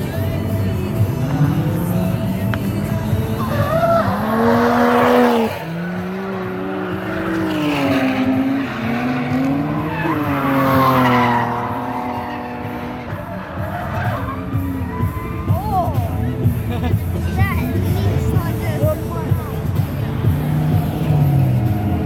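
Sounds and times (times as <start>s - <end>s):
tyres squealing: 0.0s - 16.6s
car engine revving: 0.0s - 22.0s.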